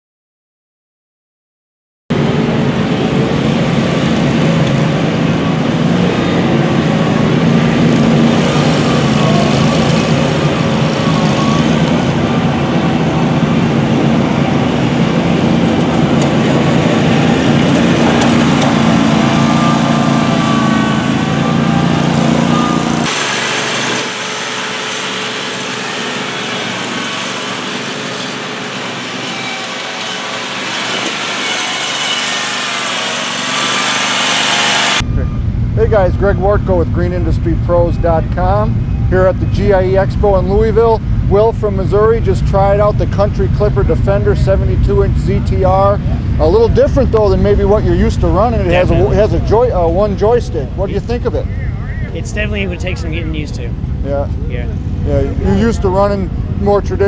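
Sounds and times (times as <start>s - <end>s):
riding mower engine running: 2.1s - 57.0s
faint wavering whine: 35.0s - 56.7s.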